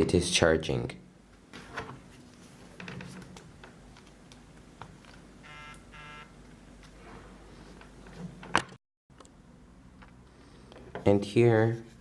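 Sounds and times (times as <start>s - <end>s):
short electronic buzzing beeps: 5.4s - 6.4s.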